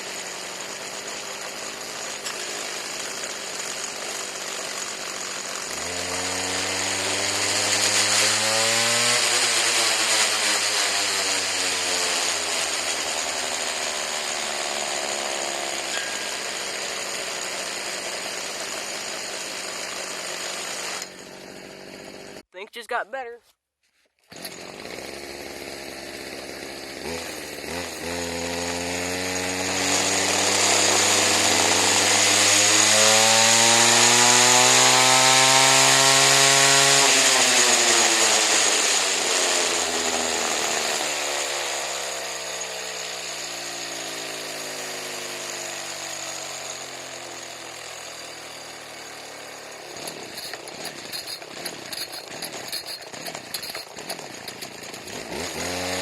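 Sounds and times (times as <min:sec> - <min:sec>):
weed eater engine running: 0:00.0 - 0:22.4, 0:24.2 - 0:56.0.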